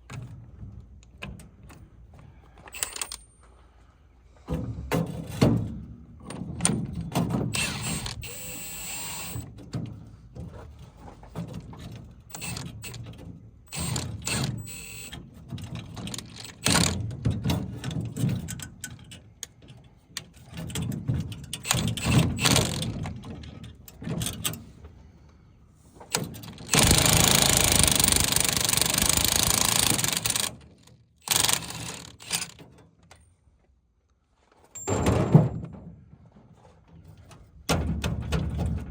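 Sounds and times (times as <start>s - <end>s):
metal tools clinking and knocking: 2.7s - 3.4s
loud steady noise: 26.7s - 30.5s.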